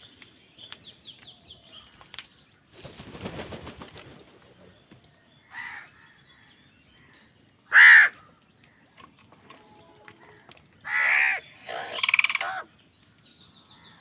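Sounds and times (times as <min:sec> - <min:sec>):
crow wings flapping: 0:02.0 - 0:05.1
crow cawing: 0:05.5 - 0:05.9, 0:07.7 - 0:08.2, 0:10.8 - 0:12.7.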